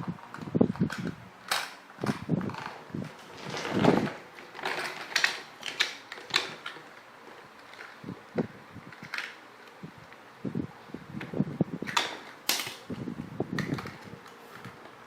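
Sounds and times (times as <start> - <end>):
plastic toy parts clicking: 0.3 - 2.8, 4.6 - 6.8, 8.9 - 9.8, 11.8 - 12.8.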